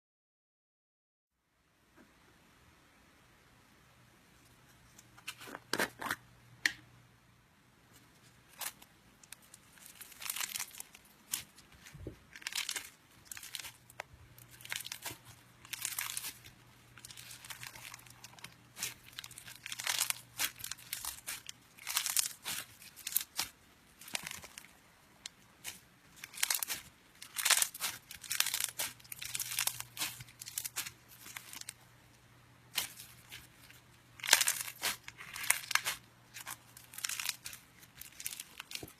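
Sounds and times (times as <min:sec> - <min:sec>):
slime squelching and crackling: 0:08.4 - 0:38.9.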